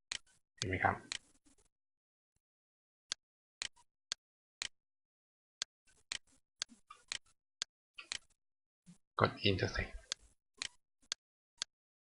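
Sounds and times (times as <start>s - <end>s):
computer mouse clicking: 1.1s - 1.3s, 8.0s - 8.4s, 10.0s - 11.7s.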